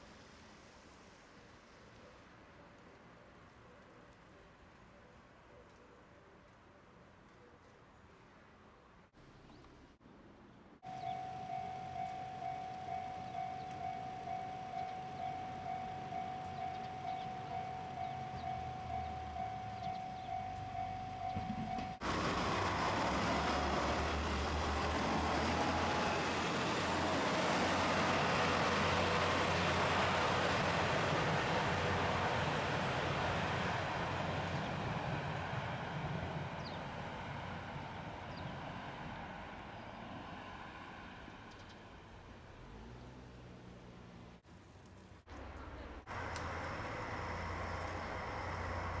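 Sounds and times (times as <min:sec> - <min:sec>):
level-crossing alarm ringing: 0:10.8 - 0:22.2
diesel train rumbling past: 0:10.8 - 0:44.2, 0:45.4 - 0:49.0.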